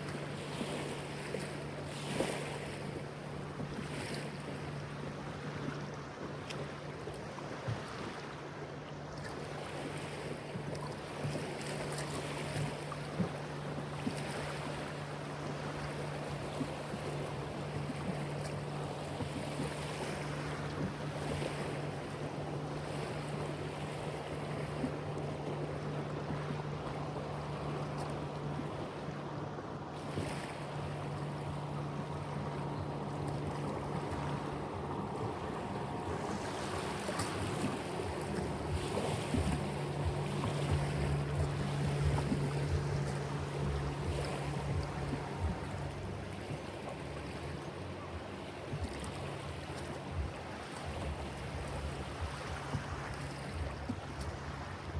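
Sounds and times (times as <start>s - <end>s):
river water lapping: 0.0s - 54.9s
low hum: 10.3s - 54.9s
wind buffeting microphone: 30.0s - 54.9s.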